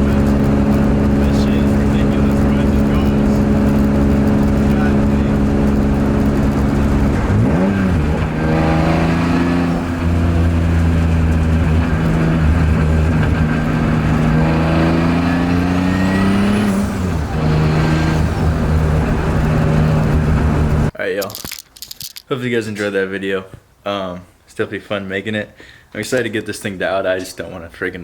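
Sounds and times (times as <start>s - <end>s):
car engine running under load: 0.0s - 20.9s.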